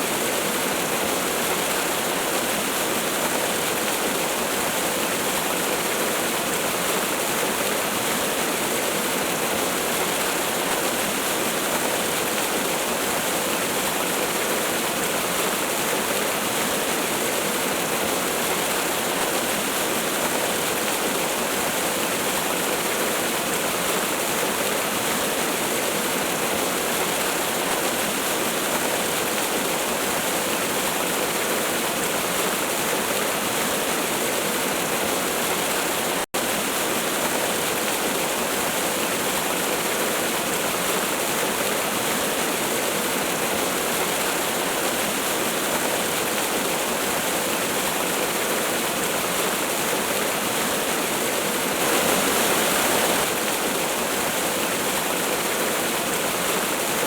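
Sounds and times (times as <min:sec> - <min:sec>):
waterfall rushing: 0:48.4 - 0:57.0.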